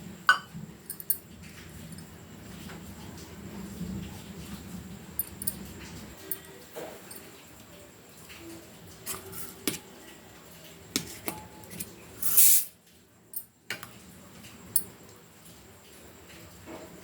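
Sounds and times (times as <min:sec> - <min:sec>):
short loud hissing rush: 0:12.2 - 0:12.7.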